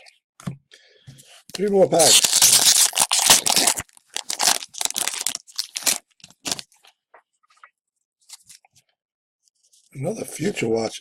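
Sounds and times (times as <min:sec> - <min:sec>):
wrapper tearing and crinkling: 0:01.6 - 0:06.7.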